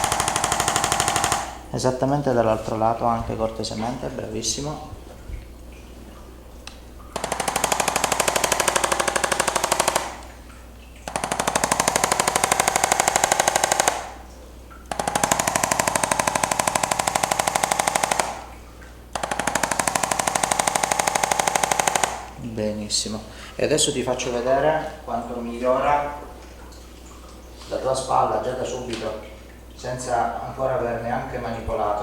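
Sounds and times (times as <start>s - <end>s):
percussion massager hammering: 0.0s - 1.7s, 7.2s - 10.4s, 11.1s - 14.3s, 14.9s - 22.4s.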